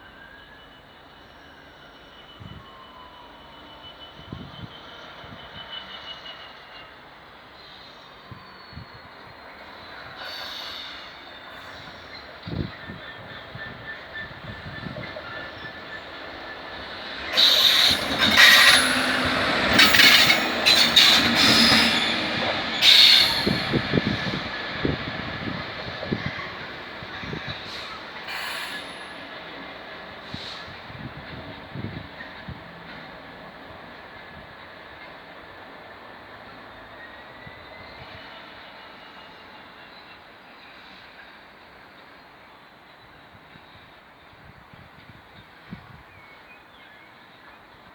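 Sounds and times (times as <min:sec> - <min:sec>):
wheels screeching on rails: 0:00.0 - 0:35.3
train rumbling past: 0:00.0 - 0:42.2.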